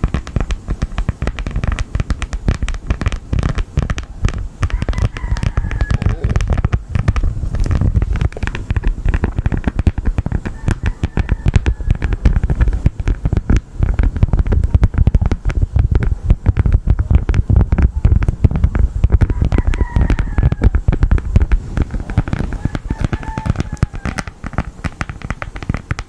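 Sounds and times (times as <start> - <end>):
honeycomb wax crackling: 0.0 - 26.0.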